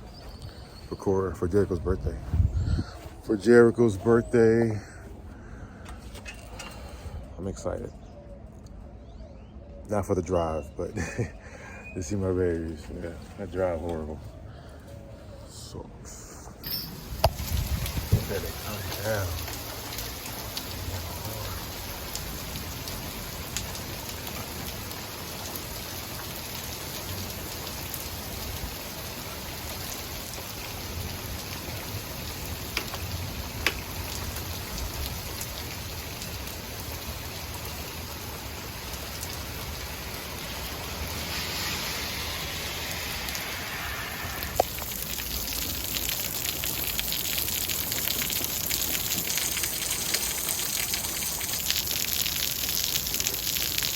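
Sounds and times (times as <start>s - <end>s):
steady rain pouring: 16.7s - 53.9s.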